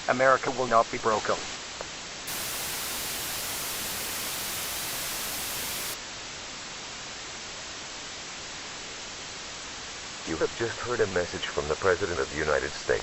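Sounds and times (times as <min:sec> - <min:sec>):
static hiss: 0:02.3 - 0:06.0.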